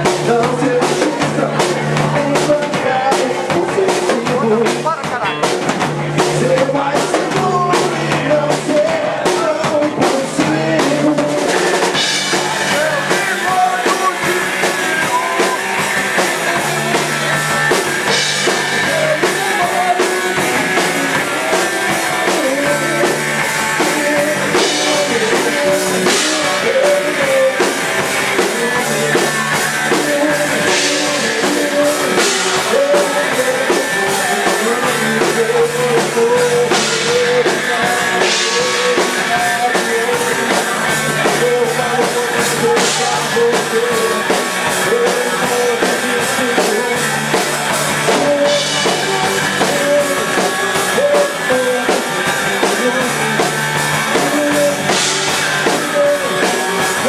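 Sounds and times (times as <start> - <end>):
drum kit: 0.0 - 57.0
rock band playing: 0.0 - 57.0.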